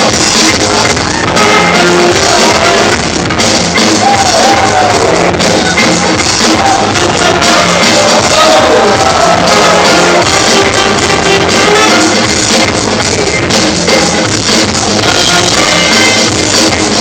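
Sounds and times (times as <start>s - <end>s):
loud dance music: 0.0s - 17.0s
crowd shouting: 0.8s - 12.3s.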